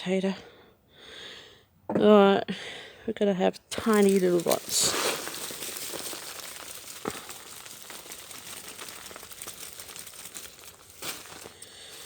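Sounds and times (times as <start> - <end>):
soil and plants rustling: 3.6 - 12.0.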